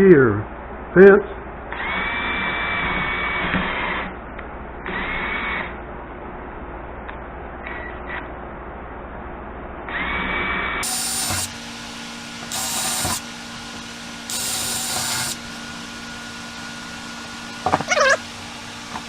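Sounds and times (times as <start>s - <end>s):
power drill drilling: 10.8s - 19.0s.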